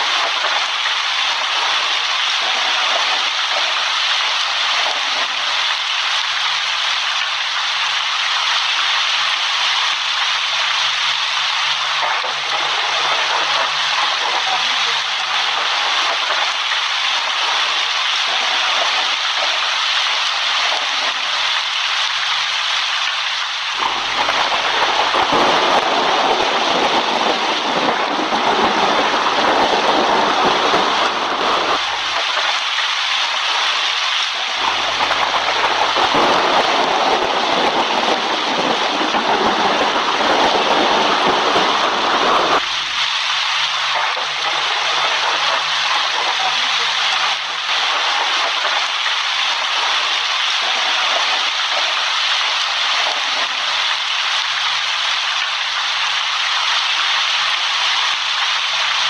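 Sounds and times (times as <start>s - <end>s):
heavy rain: 0.0s - 59.0s
thunder rolling: 23.8s - 43.0s.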